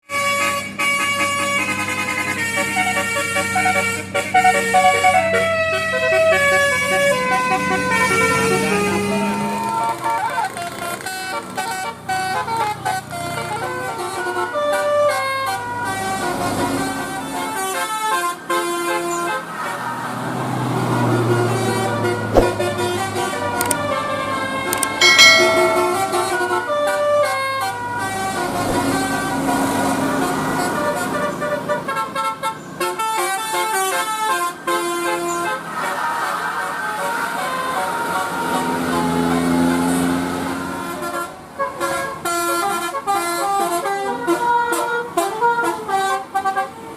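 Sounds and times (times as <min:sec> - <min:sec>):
road traffic: 0:00.1 - 0:46.9
musical air horn melody: 0:25.0 - 0:27.2.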